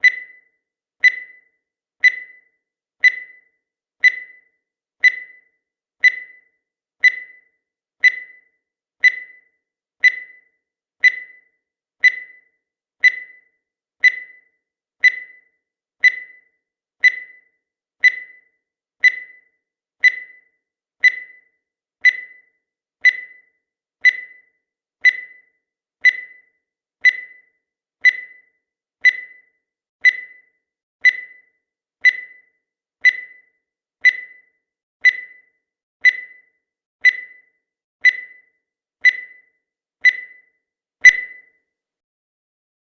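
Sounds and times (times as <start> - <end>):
high-pitched electronic beeps: 0.0 - 0.4, 1.0 - 1.4, 2.0 - 2.4, 3.0 - 3.4, 4.0 - 4.4, 5.0 - 5.4, 6.0 - 6.4, 7.0 - 7.4, 40.0 - 41.5.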